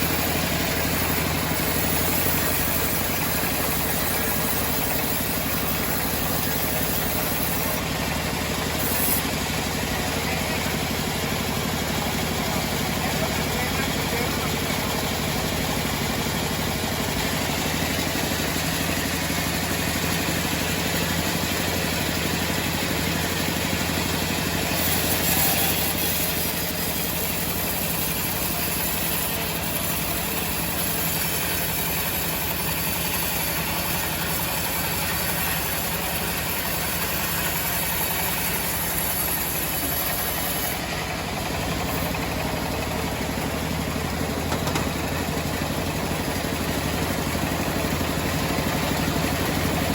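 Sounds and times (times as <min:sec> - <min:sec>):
saw blade hissing through log: 0:00.0 - 0:10.1, 0:17.3 - 0:42.4
sawmill motor drone: 0:00.0 - 0:49.9.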